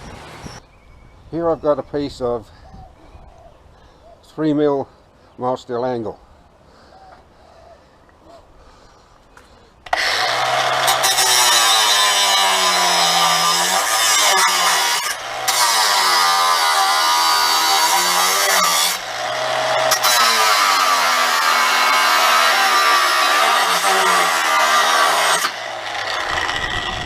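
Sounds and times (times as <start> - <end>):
angle grinder cutting steel: 9.9 - 27.0.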